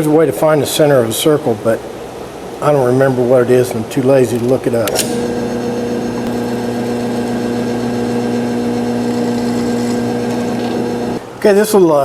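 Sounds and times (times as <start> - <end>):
wood lathe motor humming: 3.2 - 11.4.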